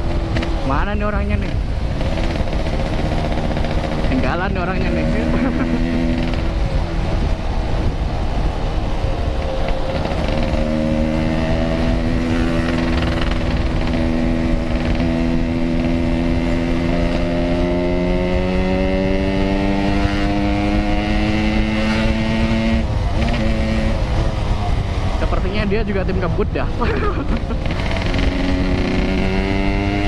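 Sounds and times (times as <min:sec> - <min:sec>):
motorcycle two-stroke engine running: 0:01.3 - 0:06.6, 0:09.8 - 0:24.8, 0:26.8 - 0:30.0.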